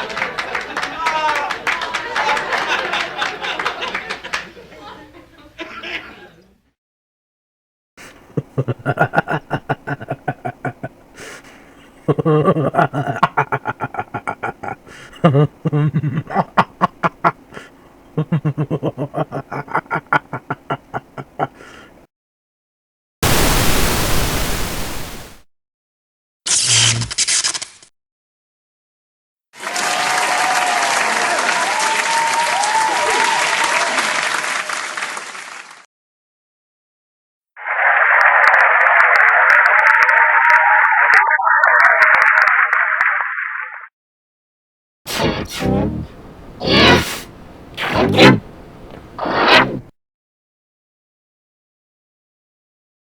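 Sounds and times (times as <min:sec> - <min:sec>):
crowd applauding and cheering: 0:00.0 - 0:04.2, 0:29.6 - 0:35.8, 0:37.7 - 0:43.1
warbling cartoon voice: 0:45.1 - 0:48.5, 0:49.2 - 0:49.9
short noisy burst: 0:45.1 - 0:48.6
cartoon choppy syllables: 0:45.1 - 0:49.9.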